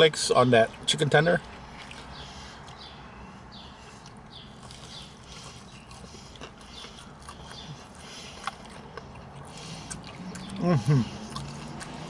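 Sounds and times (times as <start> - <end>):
low background hum: 0.0 - 12.0
person chewing crunchy food: 0.7 - 12.0.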